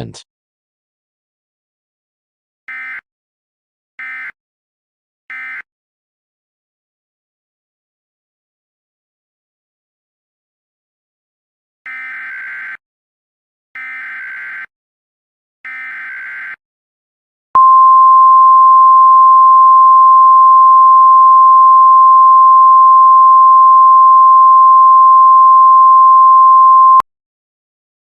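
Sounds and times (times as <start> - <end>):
steady loud attention tone: 17.6 - 27.0.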